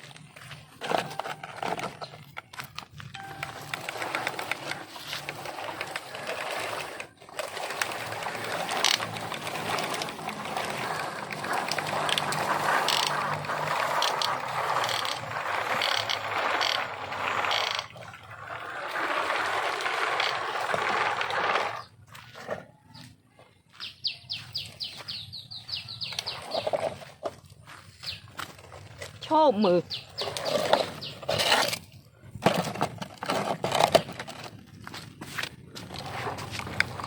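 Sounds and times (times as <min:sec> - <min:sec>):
toy gears whirring and clicking: 0:02.5 - 0:17.9.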